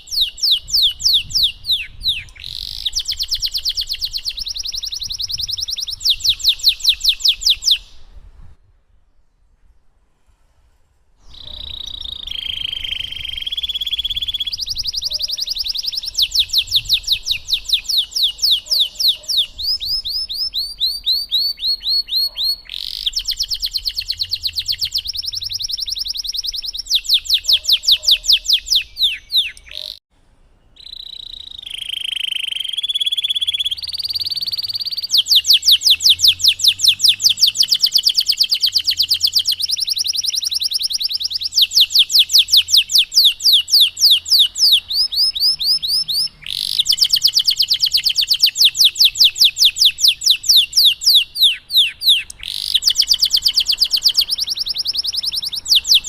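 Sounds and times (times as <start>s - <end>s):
canary singing trills: 0.0s - 8.1s, 11.2s - 30.0s, 30.7s - 56.0s.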